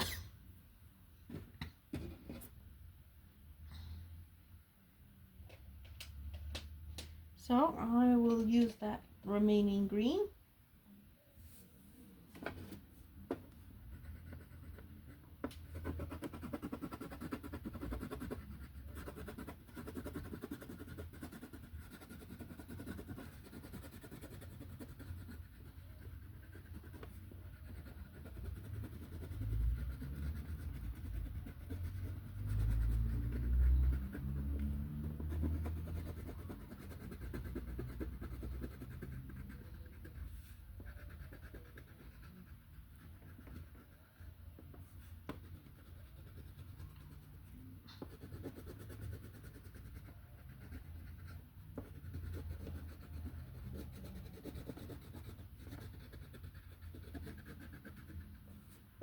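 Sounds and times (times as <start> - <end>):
coloring tool scratching paper: 13.8 - 44.4, 45.2 - 58.7.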